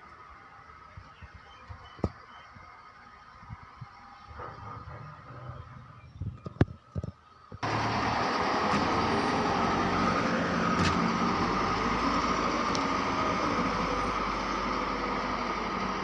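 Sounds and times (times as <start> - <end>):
plant machinery running: 7.6 - 16.0.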